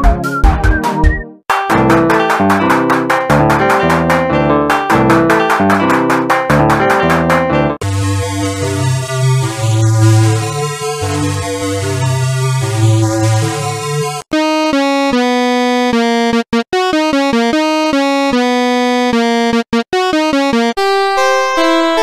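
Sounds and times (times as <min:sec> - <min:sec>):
electric piano synth melody: 0:01.1 - 0:22.0
layered keyboard part: 0:01.5 - 0:07.8, 0:14.4 - 0:22.0
electronic music with heavy bass: 0:01.5 - 0:14.2.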